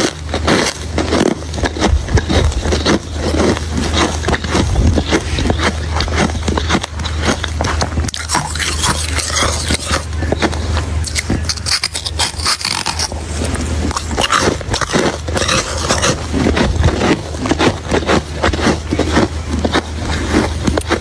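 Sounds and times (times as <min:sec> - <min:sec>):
ice being chewed: 0:00.0 - 0:21.0
steady low hum: 0:00.0 - 0:21.0.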